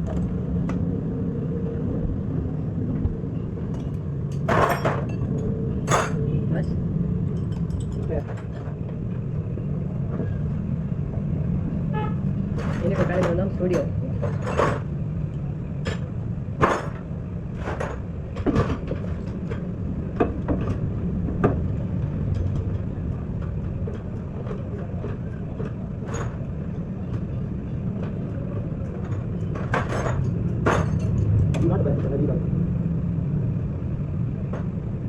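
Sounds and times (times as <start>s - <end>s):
steady low rumble: 0.0s - 35.0s
tools knocking and clinking: 3.8s - 6.3s, 28.9s - 31.7s.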